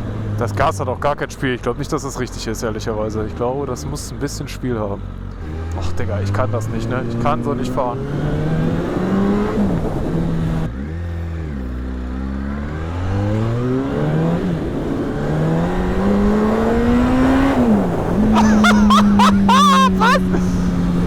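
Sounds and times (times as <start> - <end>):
motorcycle engine accelerating: 5.0 - 21.0.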